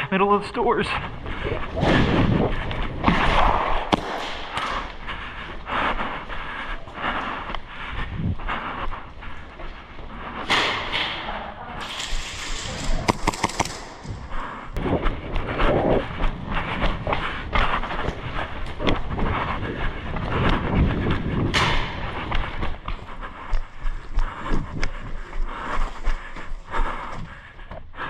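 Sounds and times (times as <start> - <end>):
footsteps: 0.0 - 28.0
airsoft gun shots: 13.0 - 14.0.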